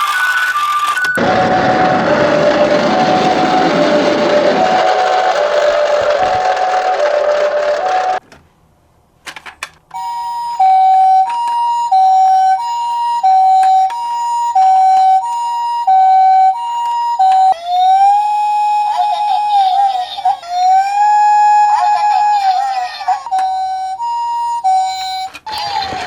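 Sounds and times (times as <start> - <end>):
toy siren two-tone and wail: 9.9 - 26.0.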